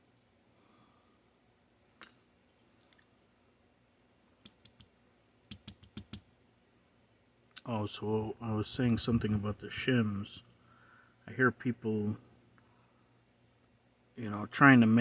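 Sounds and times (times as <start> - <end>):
metal lock parts clicking: 4.5 - 4.8.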